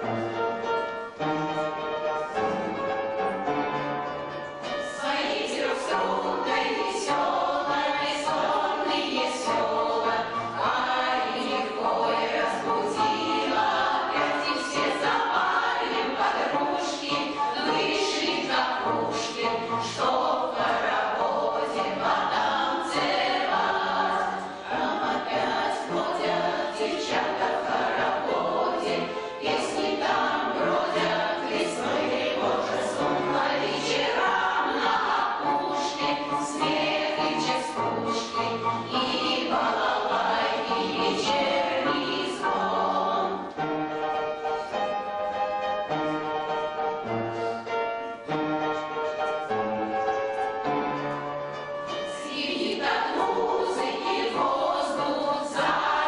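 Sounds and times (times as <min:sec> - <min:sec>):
instrumental accompaniment: 0:00.0 - 0:56.0
choir singing: 0:04.6 - 0:45.1, 0:51.9 - 0:56.0.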